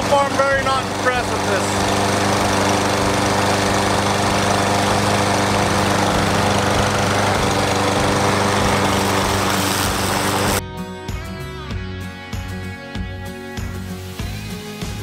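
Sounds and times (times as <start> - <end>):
lawn mower engine running: 0.0 - 10.6.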